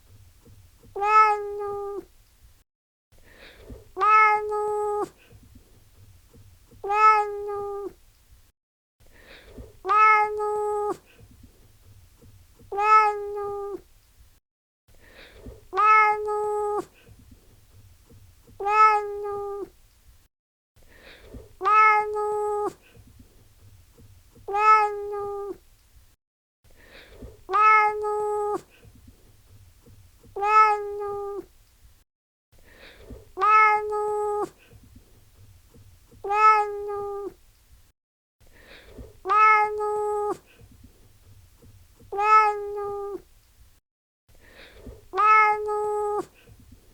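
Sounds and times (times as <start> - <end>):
cat meowing: 1.0 - 2.0, 4.0 - 5.1, 6.8 - 8.0, 9.8 - 11.0, 12.7 - 13.8, 15.7 - 16.9, 18.6 - 19.7, 21.6 - 22.8, 24.4 - 25.6, 27.5 - 28.7, 30.3 - 31.5, 33.4 - 34.6, 36.2 - 37.4, 39.2 - 40.4, 42.0 - 43.2, 44.9 - 46.3.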